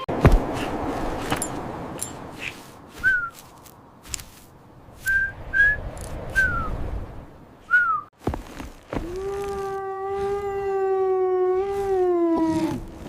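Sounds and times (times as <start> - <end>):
short whistle-like tones: 3.0 - 3.5, 5.0 - 6.8, 7.7 - 8.1.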